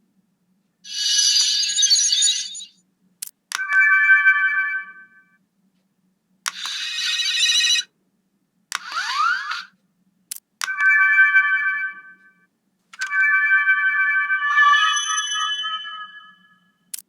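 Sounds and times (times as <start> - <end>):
electronic ringing chime: 0.9 - 2.7, 3.6 - 5.3, 6.6 - 7.9, 10.7 - 12.3, 13.0 - 16.8
electronic shimmering sparkle: 0.9 - 2.7, 3.6 - 5.2, 13.0 - 16.8
toy button click: 6.5 - 6.9
electronic rising sweeps: 13.0 - 16.6.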